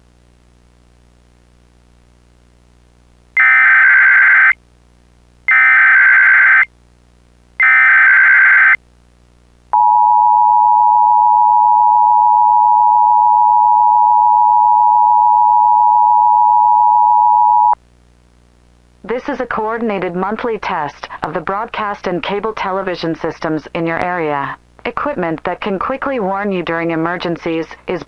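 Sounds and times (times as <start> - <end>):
two-tone attention signal: 9.8 - 17.8.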